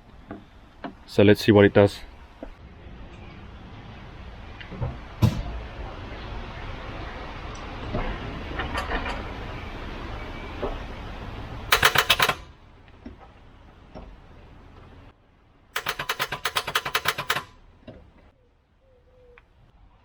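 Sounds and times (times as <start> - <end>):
starter solenoid chattering clicks: 11.7 - 14.9, 15.8 - 18.2.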